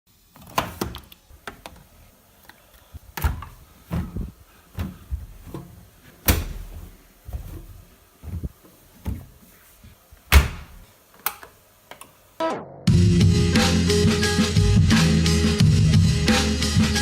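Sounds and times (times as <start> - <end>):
irregular knocks and thumps: 3.2 - 9.4.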